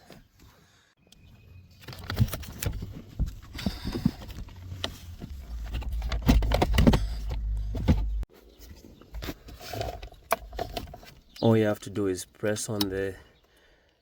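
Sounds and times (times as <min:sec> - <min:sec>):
low rumble: 0:03.7 - 0:08.2.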